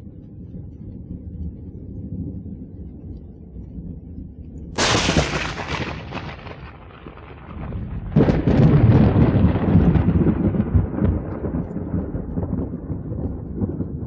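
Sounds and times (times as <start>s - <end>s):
low thunder rumble: 0.0s - 14.0s
rolling crash of thunder: 4.8s - 14.0s
sharp thunderclap with crackles: 4.8s - 14.0s.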